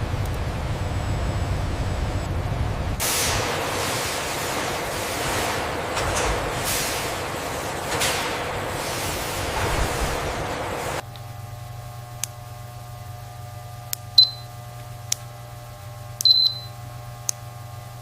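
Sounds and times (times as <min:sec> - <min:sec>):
loud steady hiss: 0:00.0 - 0:11.0
low machine hum: 0:00.0 - 0:18.0
short high beeps: 0:14.2 - 0:14.5, 0:16.2 - 0:16.8.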